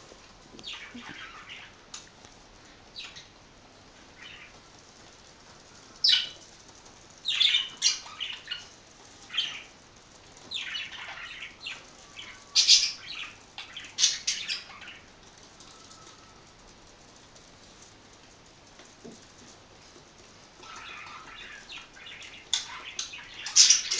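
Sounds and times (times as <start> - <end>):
budgerigars chirping and squawking: 0.7 - 1.8, 10.5 - 15.0, 20.6 - 23.9.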